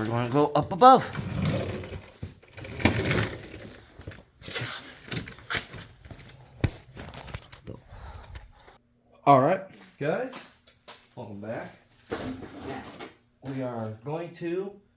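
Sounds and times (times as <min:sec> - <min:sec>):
handling knocks and rustles: 0:00.0 - 0:08.2, 0:12.0 - 0:13.7.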